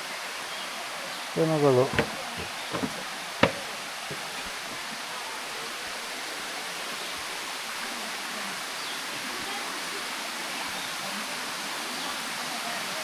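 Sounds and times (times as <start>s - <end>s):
sharp knock: 1.9s - 3.7s.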